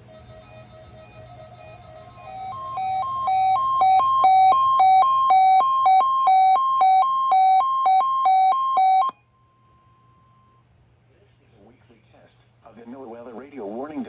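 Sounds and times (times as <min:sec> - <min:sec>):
electronic two-tone alert beeping: 0:00.0 - 0:09.2.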